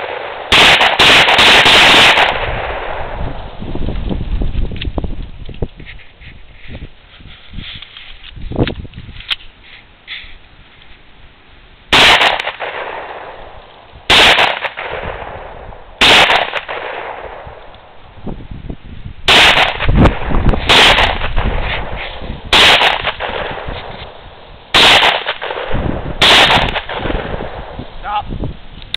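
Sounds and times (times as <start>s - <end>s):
pistol shots: 0.0s - 3.2s, 11.9s - 13.5s, 14.1s - 17.6s, 19.3s - 27.8s.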